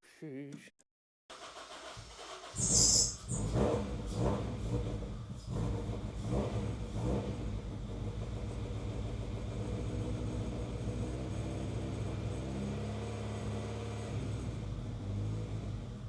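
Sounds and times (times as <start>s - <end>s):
engine running roughly misfiring: 1.3s - 11.1s.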